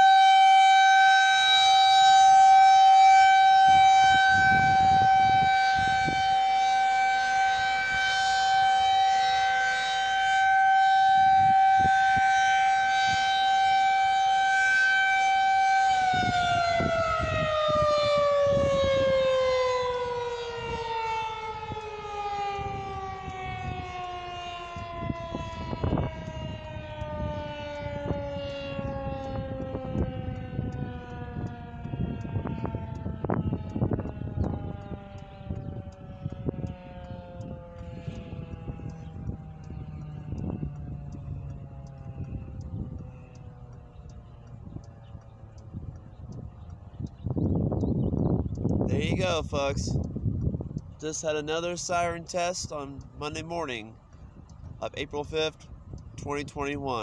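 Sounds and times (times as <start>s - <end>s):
warning siren: 0.0s - 57.0s
low rumbles: 19.8s - 57.0s.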